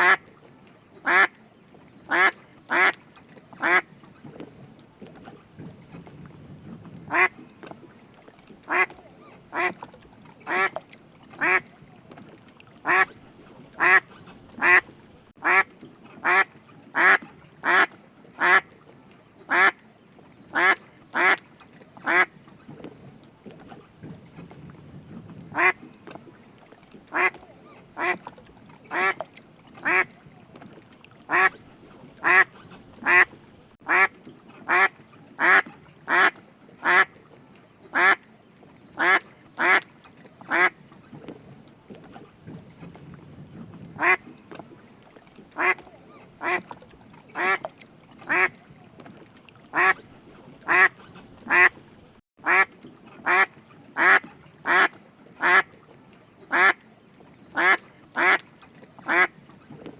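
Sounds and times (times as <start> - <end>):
duck quacking: 0.0 - 0.2, 1.1 - 1.3, 2.1 - 3.0, 3.6 - 3.8, 7.1 - 7.3, 8.7 - 9.8, 10.5 - 10.7, 11.4 - 11.6, 12.8 - 13.1, 13.8 - 18.6, 20.6 - 21.4, 22.0 - 22.3, 25.5 - 25.8, 27.1 - 27.4, 28.0 - 28.2, 28.9 - 29.2, 29.8 - 30.1, 31.3 - 31.6, 32.2 - 33.3, 33.9 - 34.1, 34.7 - 37.1, 40.5 - 40.7, 44.0 - 44.2, 45.6 - 45.8, 46.4 - 46.6, 49.7 - 50.0, 50.7 - 51.8, 52.4 - 55.6, 57.6 - 58.4.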